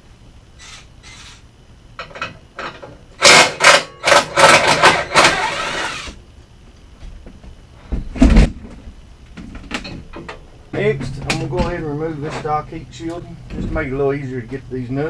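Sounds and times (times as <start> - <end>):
cordless power tool running: 3.2 - 6.2.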